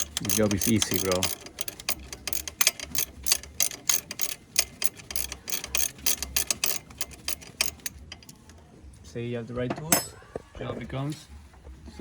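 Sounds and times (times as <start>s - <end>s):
hand ratchet clicking rapidly: 0.0s - 8.5s.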